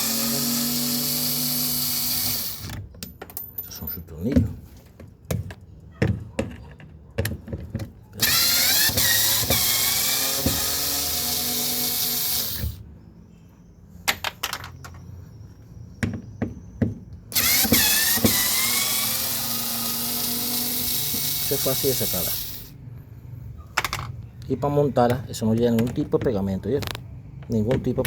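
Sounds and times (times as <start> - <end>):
electric drill-driver whirring: 0.0 - 2.8, 8.2 - 12.8, 17.3 - 22.7.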